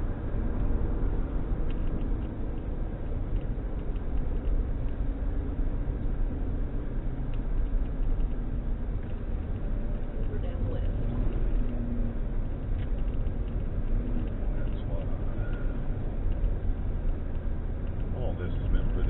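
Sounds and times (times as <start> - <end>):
van road and engine noise: 0.0 - 19.0
faint ticks: 7.2 - 19.0.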